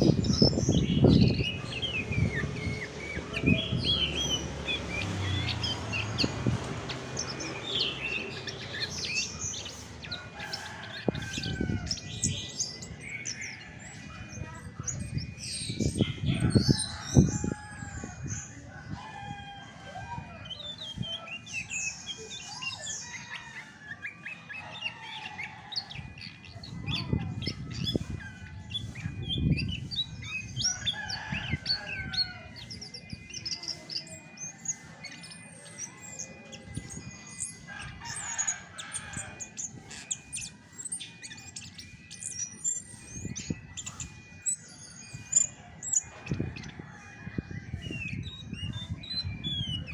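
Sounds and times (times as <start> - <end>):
thrush singing: 0.0 - 49.9.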